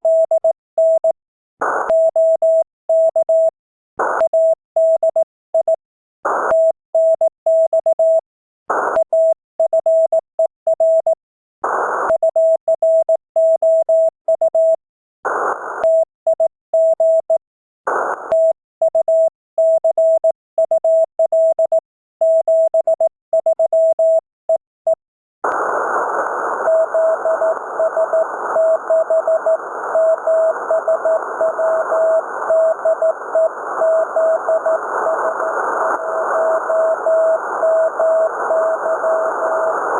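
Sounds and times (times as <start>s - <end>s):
morse code tone: 18.3s - 24.2s, 26.6s - 39.8s
weak morse signal: 26.5s - 39.9s.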